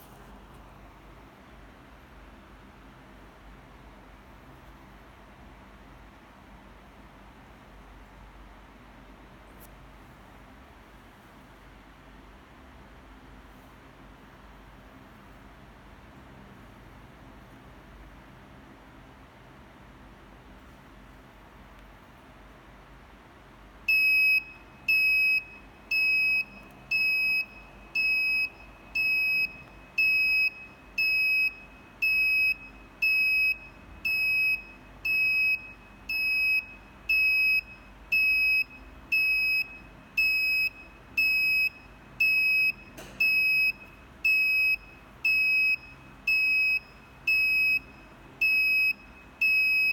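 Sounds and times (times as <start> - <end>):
high-pitched alarm beeping: 23.9 - 49.9.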